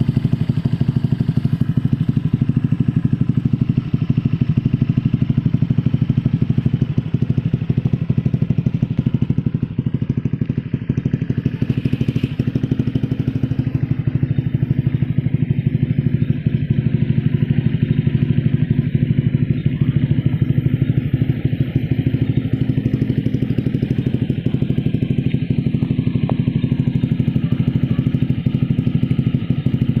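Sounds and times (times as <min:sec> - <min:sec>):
scooter engine idling: 0:00.0 - 0:30.0.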